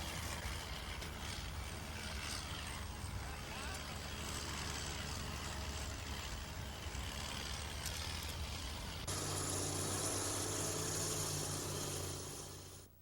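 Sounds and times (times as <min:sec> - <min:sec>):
steady engine hum with hiss: 0:00.0 - 0:13.0
heavy vehicle engine running: 0:09.0 - 0:12.9.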